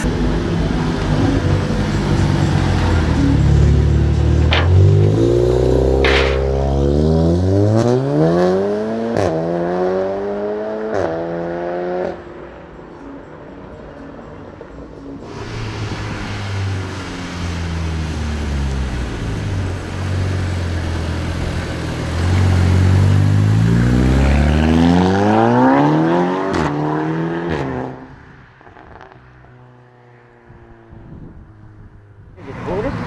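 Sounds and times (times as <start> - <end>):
car engine accelerating: 0.0 - 12.5, 15.2 - 28.1.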